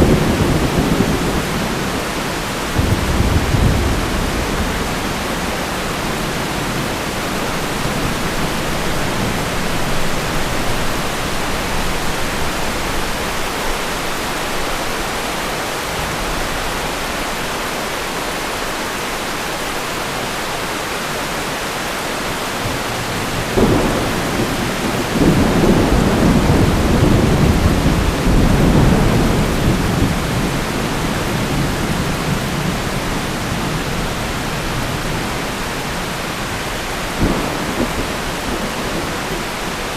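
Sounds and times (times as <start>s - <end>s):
thunderclap and rolling thunder: 0.0s - 17.0s, 22.6s - 35.5s, 36.6s - 39.9s
heavy rain hissing: 0.0s - 39.9s.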